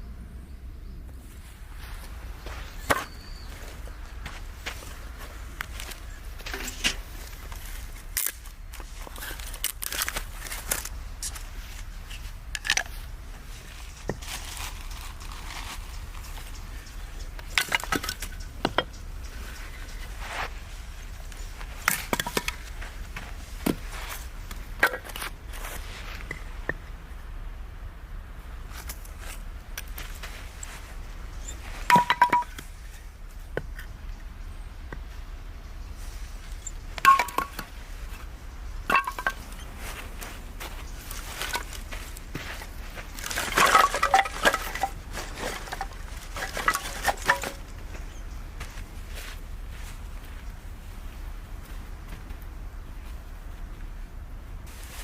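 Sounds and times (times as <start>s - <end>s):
objects being handled: 28.8s - 33.0s, 36.4s - 48.9s.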